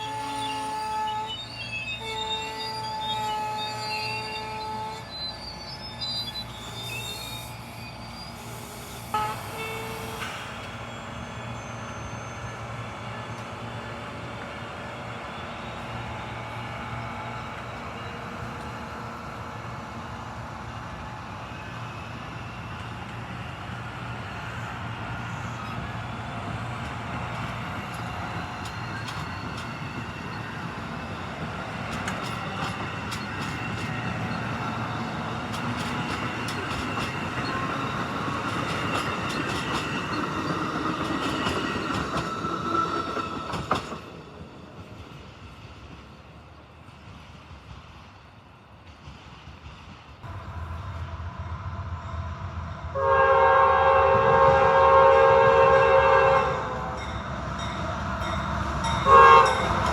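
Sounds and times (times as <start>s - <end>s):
train wheels clicking over rail joints: 26.4s - 50.3s.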